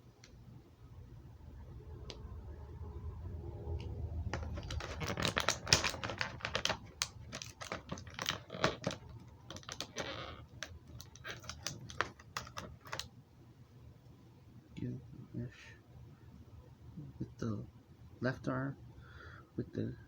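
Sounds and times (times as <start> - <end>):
low handling rumble: 1.0 - 7.0
plastic figure parts clicking: 4.4 - 13.1.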